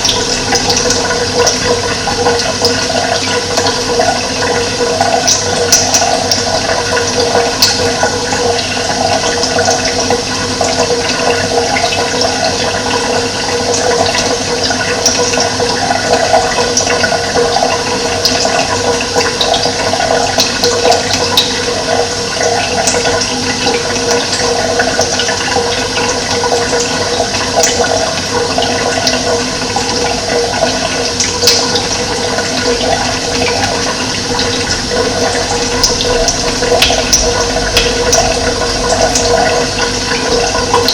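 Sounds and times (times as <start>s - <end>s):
running water: 0.0s - 40.9s.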